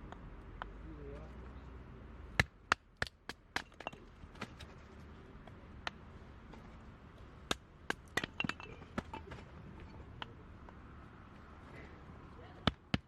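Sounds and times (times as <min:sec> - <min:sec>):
hard objects knocking and clinking: 0:03.3 - 0:04.6, 0:07.5 - 0:10.8.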